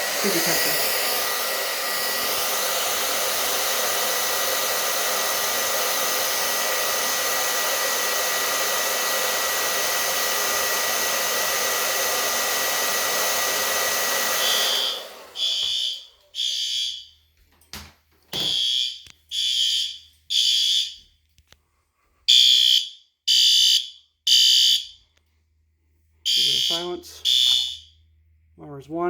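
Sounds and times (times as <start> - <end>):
hair dryer blowing: 0.0 - 17.0, 18.4 - 21.0, 26.3 - 27.8.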